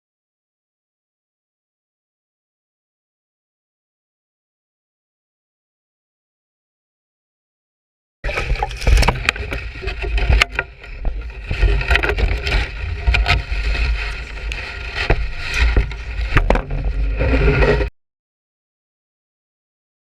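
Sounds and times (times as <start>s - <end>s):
knocks and clatter on a boat: 8.3s - 17.9s
wind buffeting the microphone: 8.3s - 17.9s.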